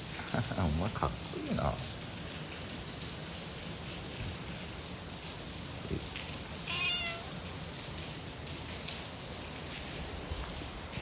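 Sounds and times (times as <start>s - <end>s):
steady background hiss: 0.0s - 2.8s
cat meowing: 6.6s - 7.4s.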